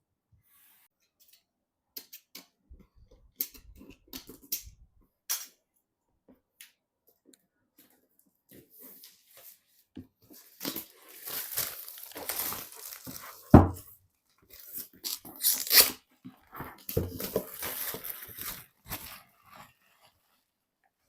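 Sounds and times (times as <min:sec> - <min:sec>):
hands handling computer parts: 0:10.3 - 0:13.9.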